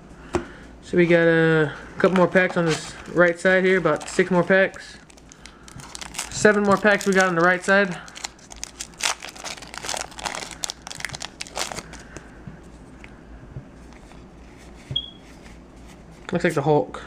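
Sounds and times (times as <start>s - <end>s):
foil pack crinkling and tearing: 2.0s - 12.2s.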